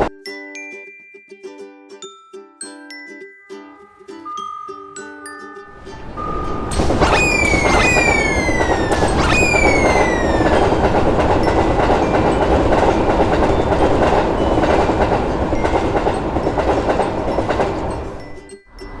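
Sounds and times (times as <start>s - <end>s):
train rumbling past: 5.7s - 19.0s
falling tone: 6.1s - 14.2s
wheels clattering over rail joints: 10.7s - 18.4s.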